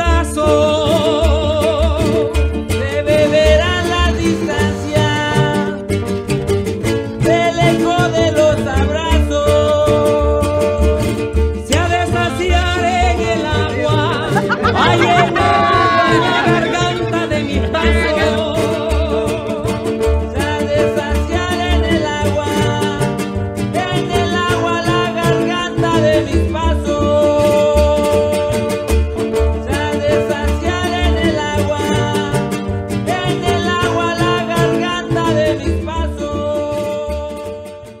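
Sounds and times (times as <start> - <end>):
plucked guitars: 0.0 - 38.0
pulsing bass line: 13.3 - 19.5.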